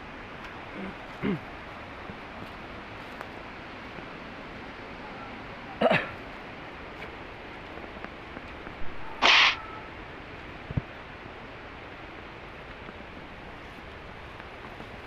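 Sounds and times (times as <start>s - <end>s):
steady background hiss: 0.0s - 15.0s
short sharp vocal sound: 9.1s - 9.7s.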